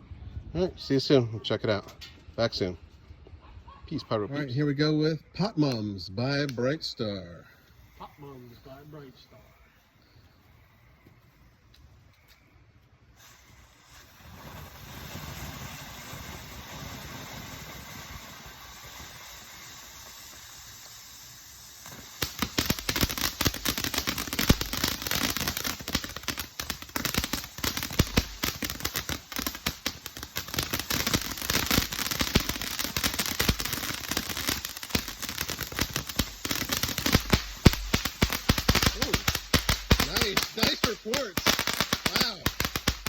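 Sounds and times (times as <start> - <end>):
firework crackling and banging: 13.1 - 43.0.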